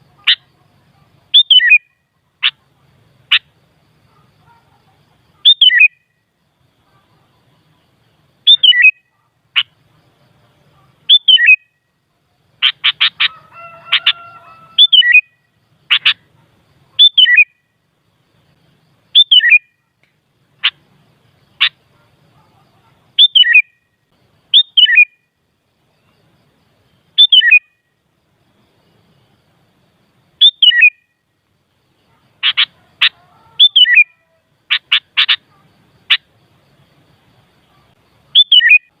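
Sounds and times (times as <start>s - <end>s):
bulbul calling: 0.0s - 6.2s, 8.4s - 11.8s, 12.6s - 17.7s, 19.1s - 20.0s, 20.6s - 20.8s, 21.5s - 25.3s, 27.1s - 27.8s, 30.4s - 31.1s, 32.1s - 36.3s, 37.6s - 39.0s.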